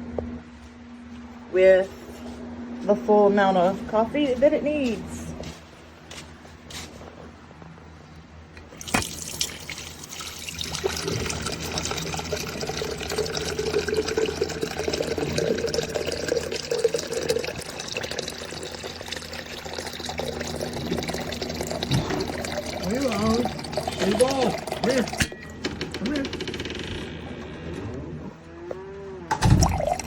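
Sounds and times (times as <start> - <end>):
tap water running into pot: 8.6 - 25.2, 29.4 - 30.0.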